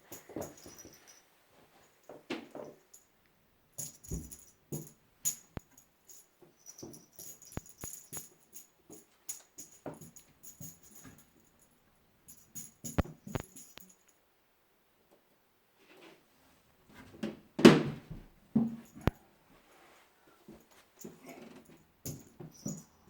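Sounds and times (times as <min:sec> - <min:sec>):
jingle bell toy rattling: 0:00.0 - 0:01.2, 0:03.8 - 0:11.7, 0:12.3 - 0:14.1, 0:22.0 - 0:23.0.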